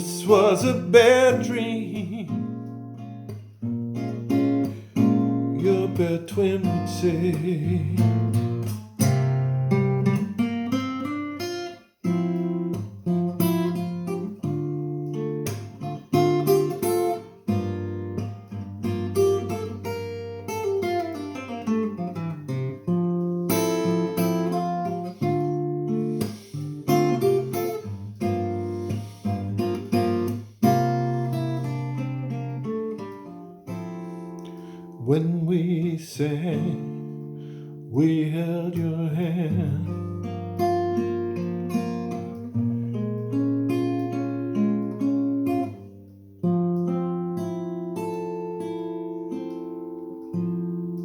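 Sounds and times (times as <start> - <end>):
acoustic guitar picking and strumming: 0.0 - 51.0.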